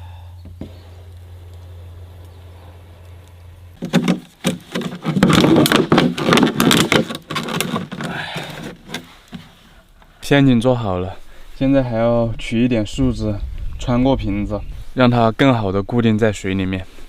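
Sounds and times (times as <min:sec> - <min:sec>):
low hum: 0:00.0 - 0:04.4, 0:10.1 - 0:16.6
plastic crackling and snapping: 0:03.0 - 0:10.1.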